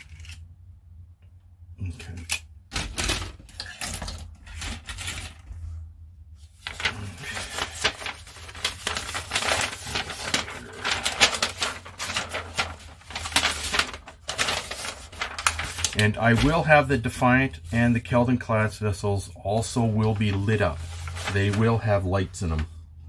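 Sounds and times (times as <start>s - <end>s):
plastic parts clicking and rattling: 2.1s - 5.4s.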